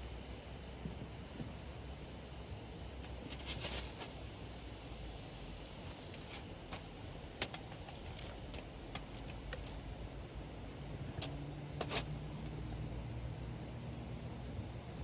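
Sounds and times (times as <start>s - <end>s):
campfire wood crackling: 0.0s - 15.0s
low fire rumble: 0.0s - 15.0s.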